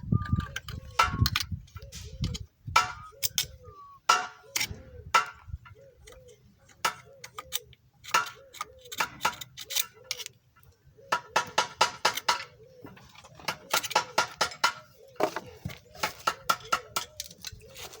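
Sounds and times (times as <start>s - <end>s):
metal striking metal: 4.1s - 5.5s.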